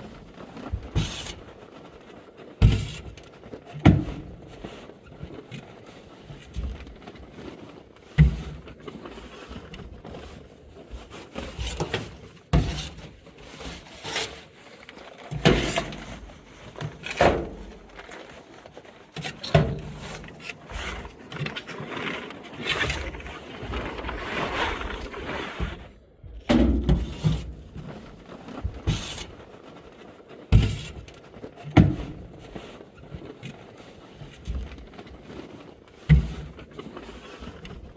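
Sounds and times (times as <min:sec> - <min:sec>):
shovel scraping manure: 0:11.2 - 0:18.4, 0:19.2 - 0:25.9.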